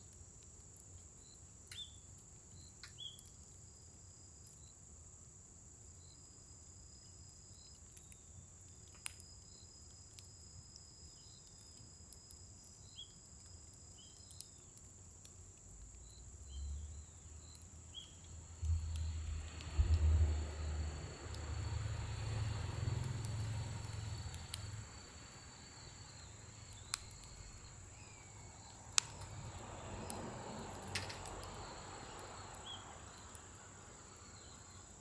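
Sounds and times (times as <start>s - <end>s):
insect trill with chirps: 1.1s - 5.1s, 5.7s - 35.0s
fire popping and crackling: 7.6s - 35.0s
low rumble: 18.3s - 27.9s.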